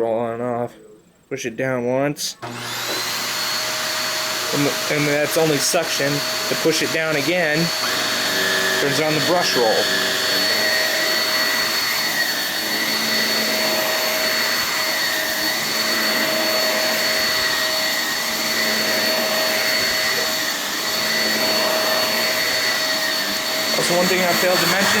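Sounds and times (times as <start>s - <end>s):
upright vacuum cleaner running: 2.4s - 25.0s.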